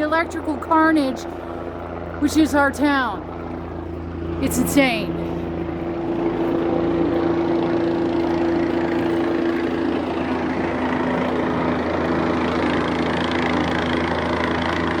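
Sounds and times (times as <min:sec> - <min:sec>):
helicopter flying overhead: 0:00.0 - 0:15.0.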